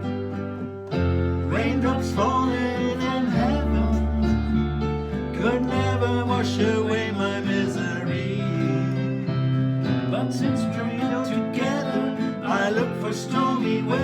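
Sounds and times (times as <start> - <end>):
low bass notes: 0.0 - 10.8
acoustic guitar strumming: 0.0 - 14.0
men singing a pop ballad: 1.4 - 14.0.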